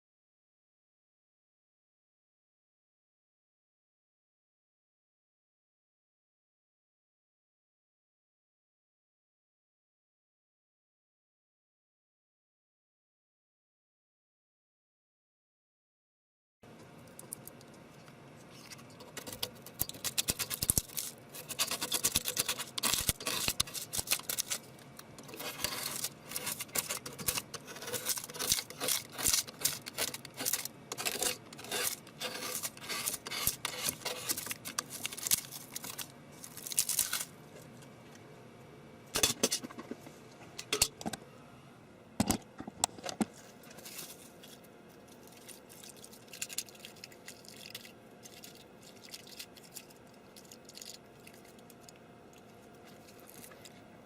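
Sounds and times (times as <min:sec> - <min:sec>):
clicks and scrapes of small objects: 0:17.0 - 0:37.9, 0:42.2 - 0:53.9.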